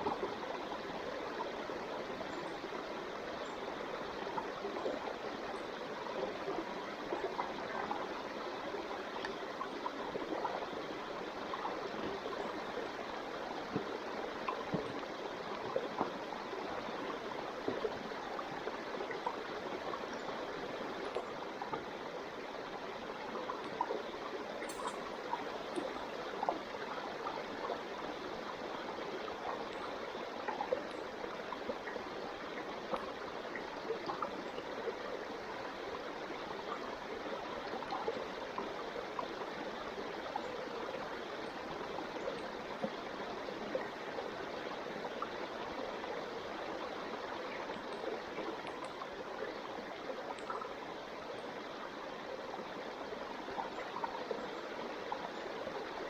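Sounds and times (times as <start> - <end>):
running water: 0.0 - 56.0
faint scattered clicks: 24.6 - 26.6.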